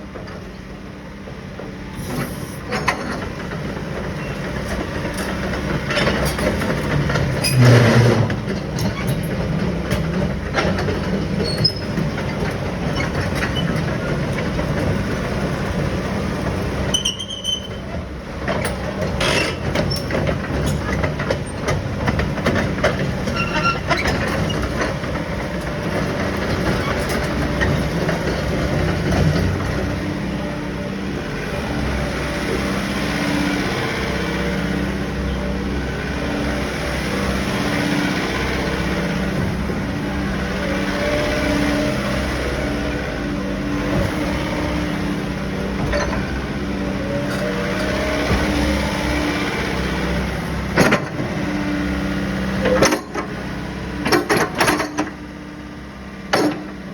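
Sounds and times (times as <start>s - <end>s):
excavator diesel engine running: 0.0s - 56.9s
metallic clanking and squealing: 5.9s - 14.3s, 16.8s - 21.8s, 22.6s - 25.0s, 45.7s - 46.5s.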